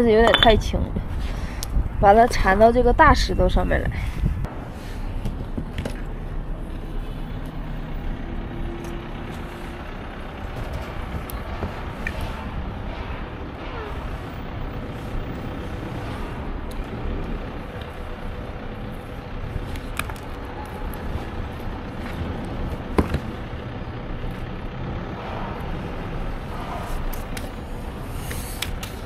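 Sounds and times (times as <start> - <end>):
wind buffeting microphone: 0.0 - 6.6.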